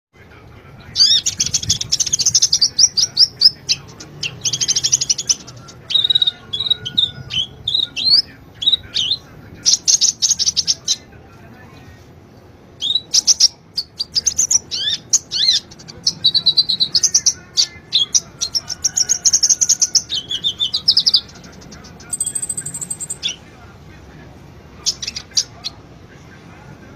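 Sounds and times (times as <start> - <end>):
bird singing in high trills: 0.9 - 11.0, 12.8 - 23.4.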